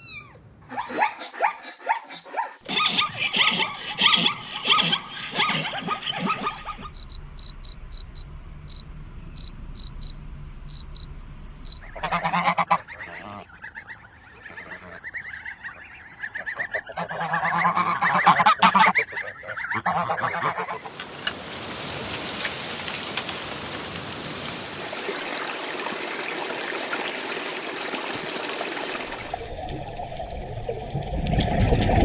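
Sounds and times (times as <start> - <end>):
geese honking: 10.7 - 21.0.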